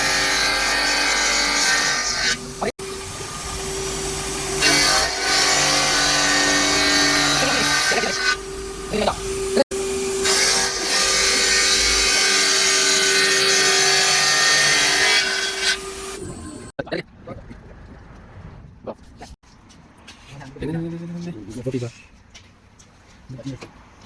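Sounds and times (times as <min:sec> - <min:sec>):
stone saw machine hum: 0:00.0 - 0:16.7.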